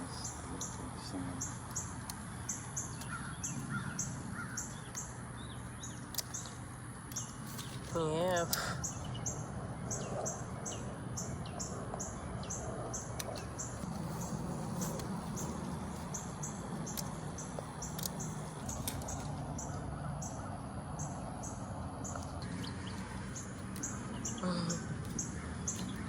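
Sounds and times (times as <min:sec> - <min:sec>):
steady low rumble: 0:00.0 - 0:26.0.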